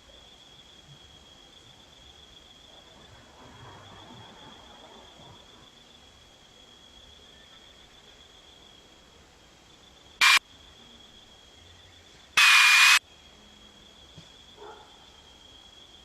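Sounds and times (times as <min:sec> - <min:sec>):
faint high whine: 0:10.2 - 0:14.0
static hiss bursts: 0:12.4 - 0:13.0.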